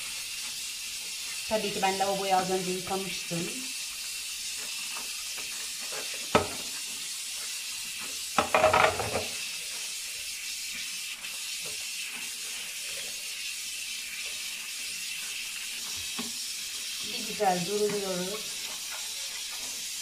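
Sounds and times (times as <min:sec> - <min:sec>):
tap water running into sink: 0:00.0 - 0:20.0
plastic parts clattering against sink: 0:08.4 - 0:09.4.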